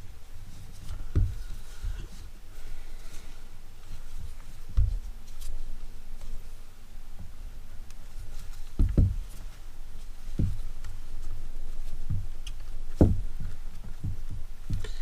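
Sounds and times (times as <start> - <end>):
dull knocks: 1.0 - 2.1, 4.2 - 5.2, 8.7 - 9.5, 10.3 - 10.8, 12.0 - 15.0.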